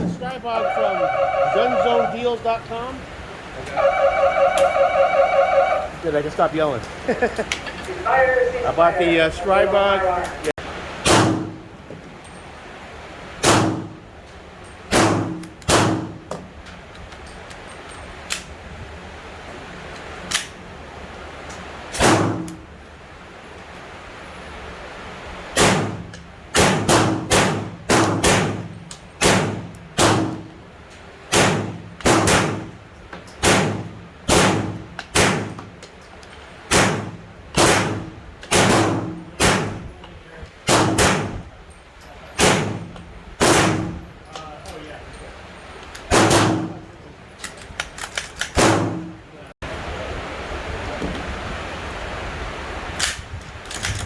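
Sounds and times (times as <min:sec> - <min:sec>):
gunshots: 0:26.6 - 0:30.4, 0:31.3 - 0:32.7, 0:33.4 - 0:35.6, 0:36.7 - 0:39.8, 0:40.7 - 0:41.4, 0:42.4 - 0:43.9, 0:46.1 - 0:46.8.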